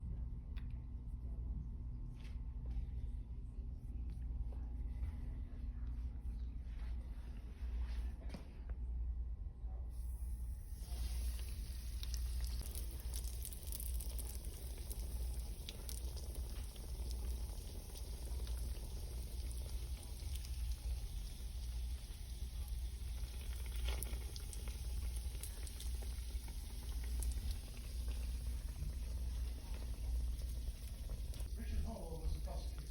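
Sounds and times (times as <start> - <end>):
steady low hum: 0.0 - 32.9
donuts sizzling in hot oil: 10.0 - 32.9.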